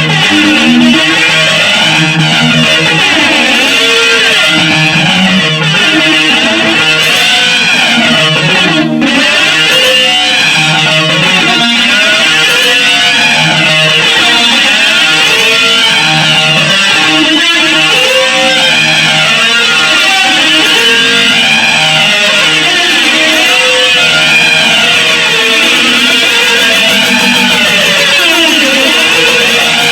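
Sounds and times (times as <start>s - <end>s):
strummed electric guitar: 0.0s - 29.9s.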